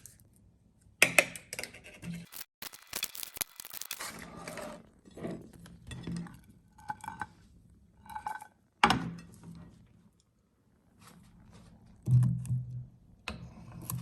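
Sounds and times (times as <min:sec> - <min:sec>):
meat grinder crunching: 0:02.2 - 0:04.1.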